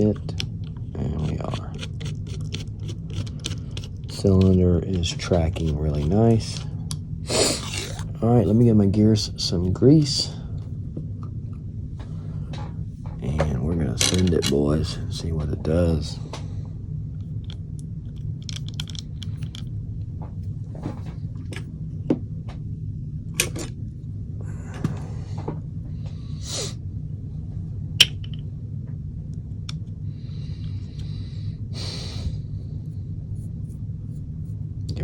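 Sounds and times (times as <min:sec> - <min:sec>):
steady low hum: 0:00.0 - 0:35.0
gearbox parts clicking and scraping: 0:00.1 - 0:06.8, 0:13.2 - 0:14.8, 0:18.4 - 0:19.7.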